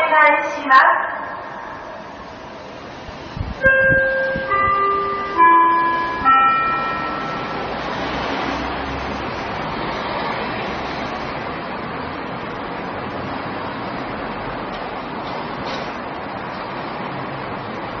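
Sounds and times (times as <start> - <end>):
street and traffic noise: 0.0 - 18.0
loudspeaker chime tones: 3.6 - 8.7.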